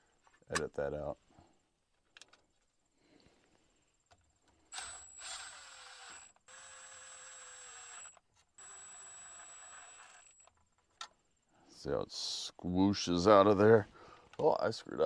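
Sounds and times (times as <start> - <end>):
power driver whining: 4.7 - 10.5.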